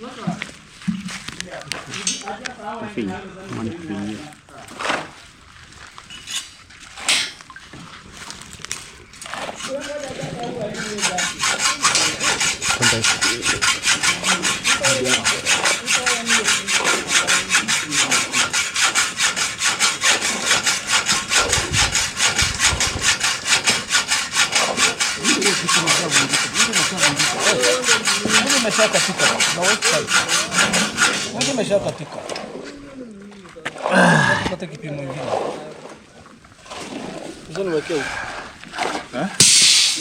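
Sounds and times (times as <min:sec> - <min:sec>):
hacksaw cutting steel bar: 0:09.4 - 0:31.7, 0:39.4 - 0:40.0.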